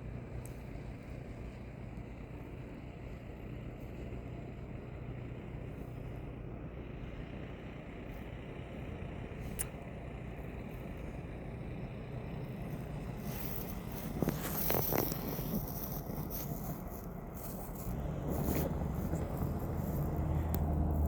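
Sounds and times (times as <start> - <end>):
diesel train rumbling: 0.0 - 21.0
scraping noises: 12.7 - 21.0.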